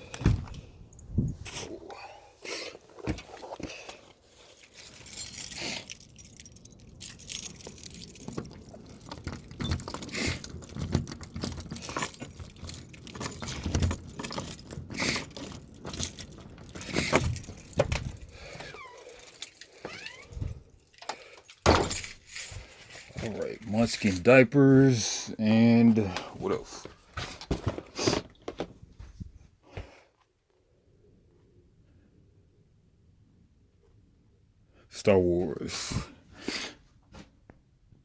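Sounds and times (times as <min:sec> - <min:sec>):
keys jangling: 0:03.1 - 0:24.4
clicks rattles and knocks: 0:04.7 - 0:24.2.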